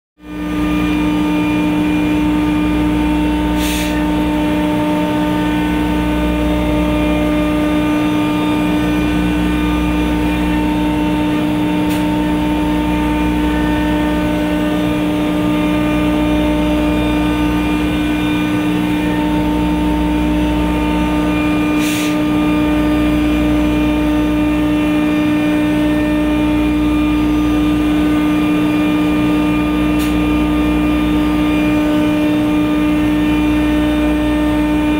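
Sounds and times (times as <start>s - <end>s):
router spindle whine: 0.2s - 34.9s
short hisses: 3.6s - 4.0s.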